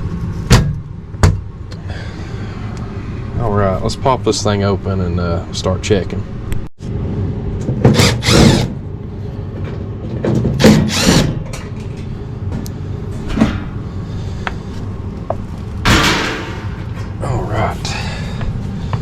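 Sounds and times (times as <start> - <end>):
steady low hum: 0.0 - 19.0
cordless drill motor spinning: 8.0 - 8.7, 10.9 - 11.2.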